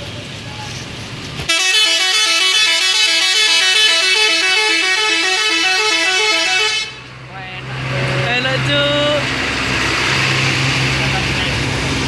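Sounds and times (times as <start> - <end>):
bus musical air horn melody: 1.5 - 7.1.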